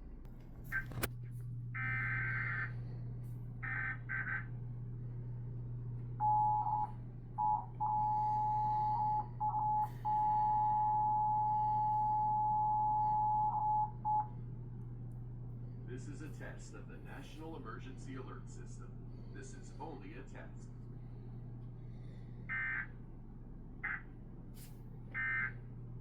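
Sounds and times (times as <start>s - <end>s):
low steady hum: 0.0s - 26.0s
two-tone attention signal: 6.2s - 14.3s.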